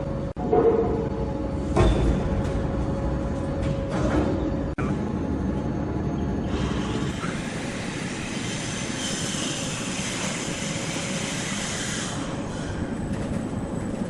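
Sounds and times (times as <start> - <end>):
sawmill machine noise: 6.3 - 14.0.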